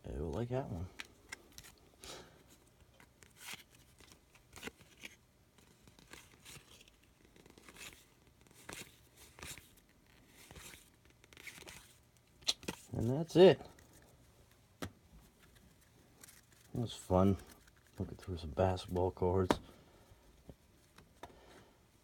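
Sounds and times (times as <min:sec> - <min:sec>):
cards swishing and scraping: 0:00.9 - 0:01.8, 0:02.5 - 0:14.6, 0:15.2 - 0:19.7.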